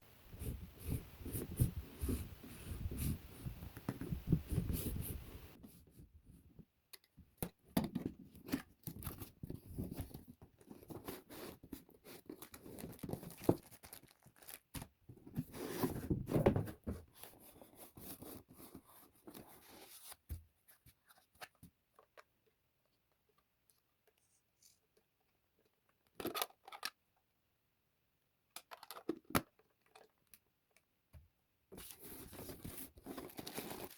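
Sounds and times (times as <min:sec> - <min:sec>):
packaging rustling and tearing: 0:10.9 - 0:14.9, 0:31.8 - 0:33.9.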